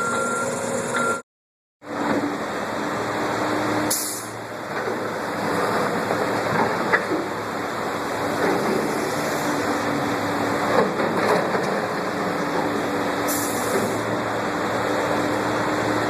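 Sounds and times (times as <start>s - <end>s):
heavy machine engine running: 0.0s - 1.2s, 1.8s - 16.0s
outdoor noise: 1.8s - 16.0s.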